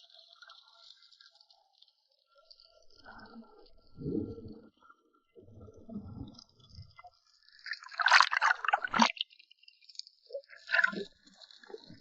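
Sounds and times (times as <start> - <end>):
water splashing and gurgling: 5.6 - 9.2, 10.3 - 12.0.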